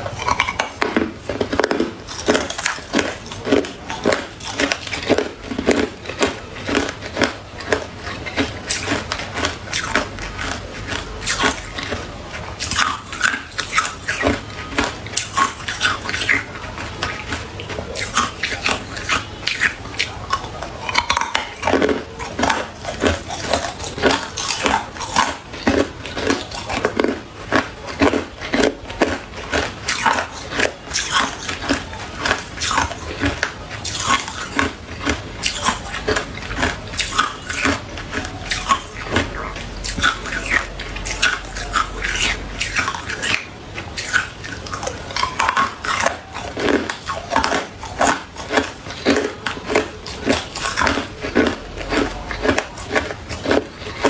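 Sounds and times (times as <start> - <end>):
ice crunching between teeth: 0.0 - 54.0.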